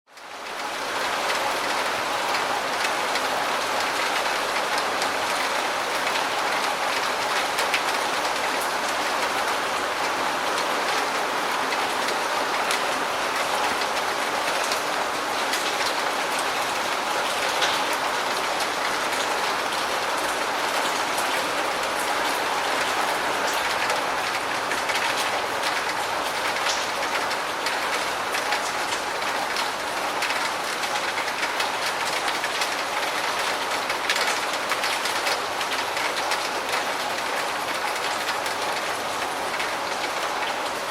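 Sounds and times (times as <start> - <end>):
steady rainfall hiss: 0.2 - 40.9
sharp raindrop ticks: 11.6 - 40.5.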